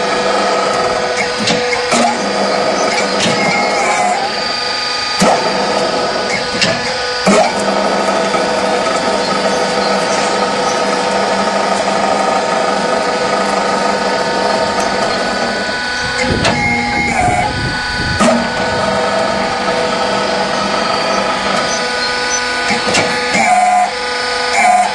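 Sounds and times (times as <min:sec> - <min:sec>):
concrete block machine humming: 0:00.0 - 0:24.9.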